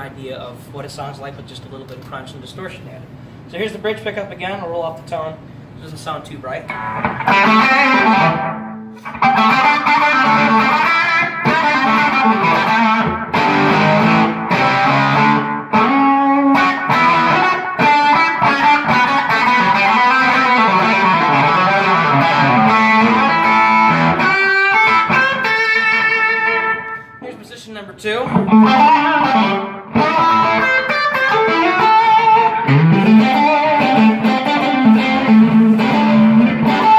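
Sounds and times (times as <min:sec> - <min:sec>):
mildly distorted electric guitar: 0:06.7 - 0:27.2, 0:28.2 - 0:36.9.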